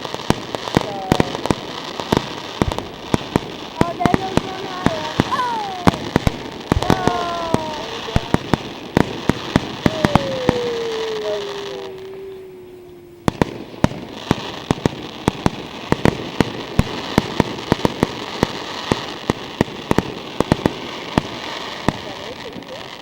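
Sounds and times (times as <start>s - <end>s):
falling firework whistle: 0.0s - 17.4s
fireworks bangs and crackle: 0.0s - 23.0s
steady hiss: 0.0s - 23.0s.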